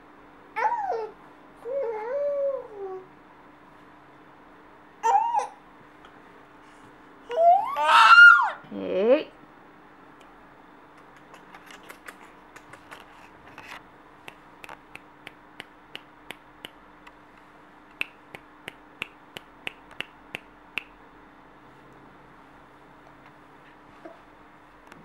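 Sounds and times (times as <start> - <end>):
child clicking tongue: 11.0 - 13.0.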